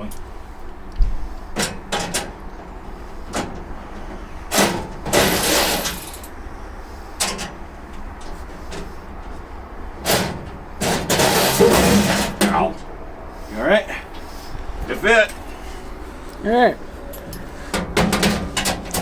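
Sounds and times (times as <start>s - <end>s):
metal scraping slide: 4.5s - 6.2s, 10.1s - 12.4s
metal clunks: 10.0s - 12.9s, 17.1s - 19.0s.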